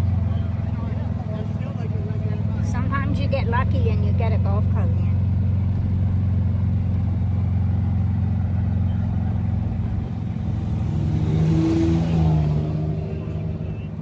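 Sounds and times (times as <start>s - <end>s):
another engine: 0.0s - 14.0s
golf cart engine rumbling: 0.0s - 14.0s.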